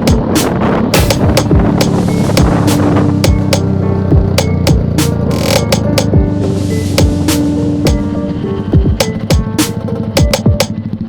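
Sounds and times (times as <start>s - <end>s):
kick drum: 0.0s - 0.4s, 1.0s - 4.9s, 6.0s - 6.4s, 7.0s - 7.3s, 8.8s - 9.6s, 10.2s - 10.7s
snare and hi-hat hits: 0.0s - 6.3s, 6.9s - 8.0s, 8.8s - 10.7s.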